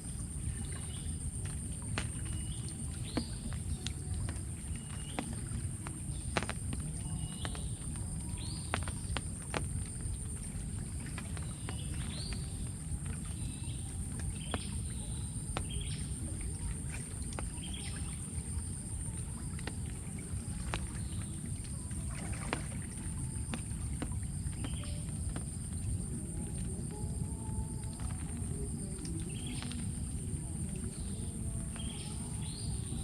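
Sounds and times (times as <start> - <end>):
stream water rushing: 0.0 - 17.8.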